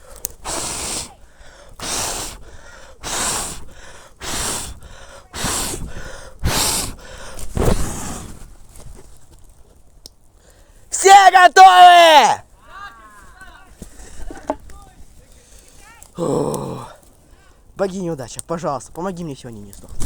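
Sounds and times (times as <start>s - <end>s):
person blowing on campfire: 0.0s - 8.8s.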